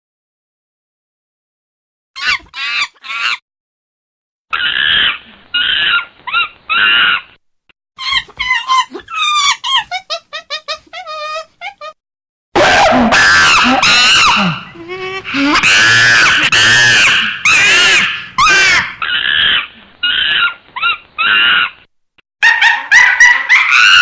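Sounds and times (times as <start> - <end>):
monkey calls: 2.2 - 3.4, 4.5 - 7.3, 15.4 - 21.8, 22.4 - 24.0
monkey screeching: 2.2 - 3.4, 4.5 - 7.4, 8.0 - 12.0, 12.6 - 14.7, 15.3 - 24.0.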